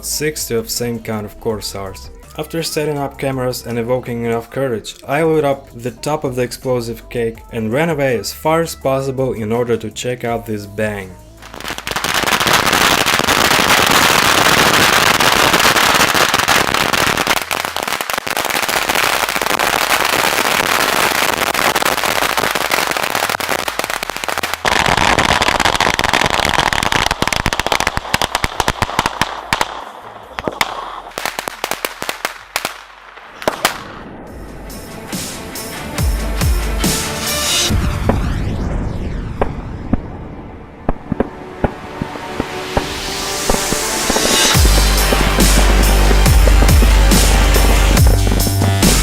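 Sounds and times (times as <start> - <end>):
firecrackers crackling: 11.1 - 49.0.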